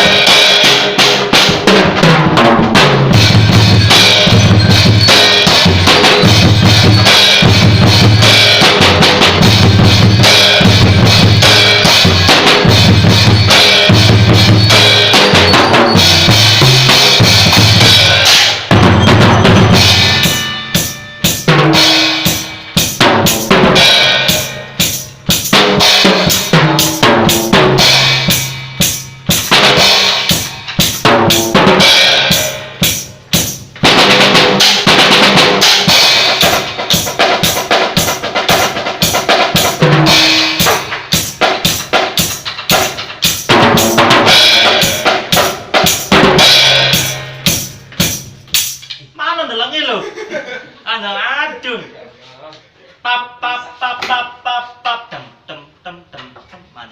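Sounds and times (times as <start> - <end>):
drum kit playing: 0.0 - 49.2
ringing cymbal crashes: 3.1 - 33.6.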